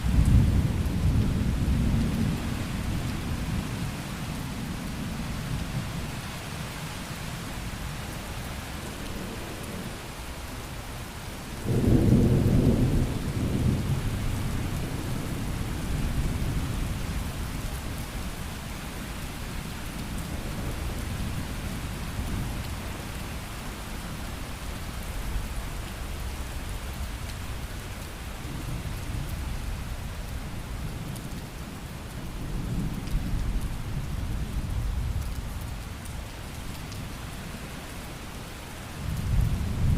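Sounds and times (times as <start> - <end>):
steady rain: 0.0 - 39.9
rolling thunder: 11.6 - 17.1, 39.1 - 39.9.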